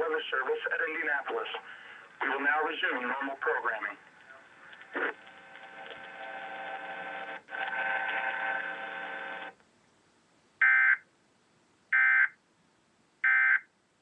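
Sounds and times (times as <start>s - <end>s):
steady buzzing hum: 4.4s - 9.6s.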